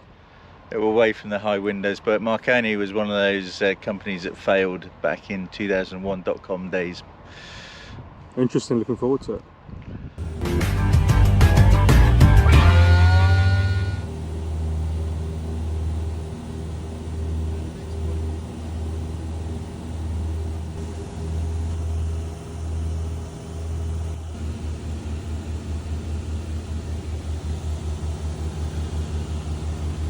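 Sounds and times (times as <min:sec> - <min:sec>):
aircraft engine droning in cabin: 0:10.2 - 0:30.0.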